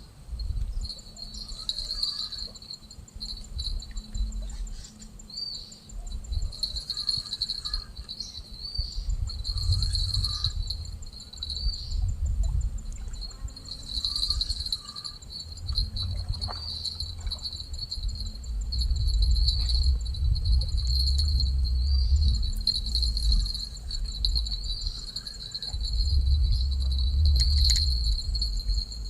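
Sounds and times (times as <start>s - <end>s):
insects trilling: 0.0s - 29.0s
low rumble: 15.4s - 29.0s.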